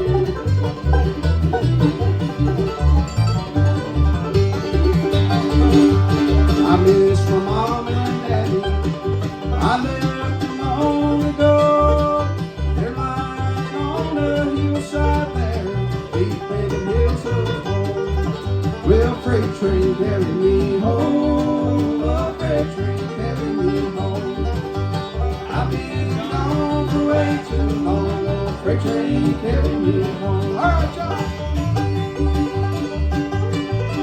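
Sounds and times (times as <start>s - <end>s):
low bass beat: 0.0s - 34.0s
plucked string lead: 0.0s - 34.0s.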